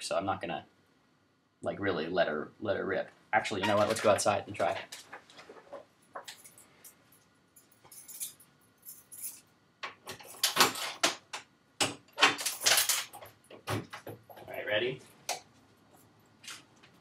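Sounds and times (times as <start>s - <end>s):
keys jangling and rustling clatter: 6.0s - 9.5s, 10.1s - 11.0s, 12.3s - 14.4s.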